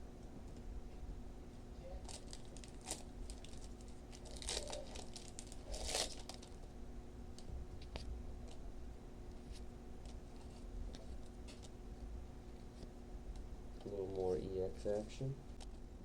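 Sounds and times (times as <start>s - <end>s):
foil wrapper crinkling and tearing: 2.0s - 6.6s.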